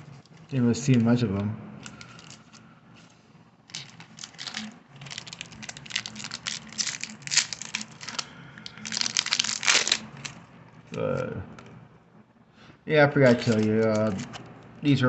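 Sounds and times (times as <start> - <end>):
card pack wrapper crinkling and tearing: 1.8 - 2.6, 3.7 - 10.4, 13.2 - 14.4.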